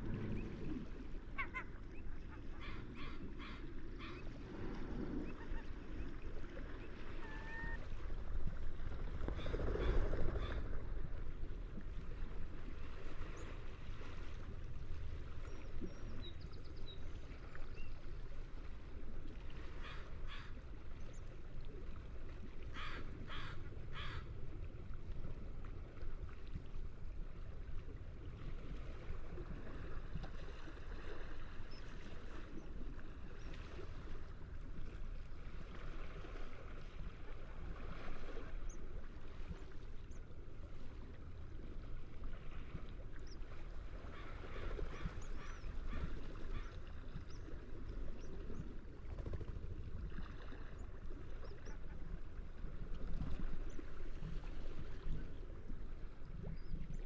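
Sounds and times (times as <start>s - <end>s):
ocean waves washing: 0.0s - 11.0s
seagulls calling: 1.3s - 4.4s, 5.2s - 6.2s, 6.9s - 7.9s.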